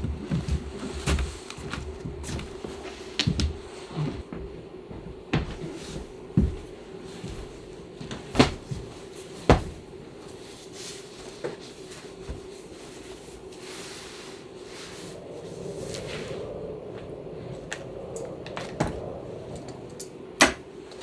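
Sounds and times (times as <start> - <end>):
steady low hum: 0.0 - 10.6.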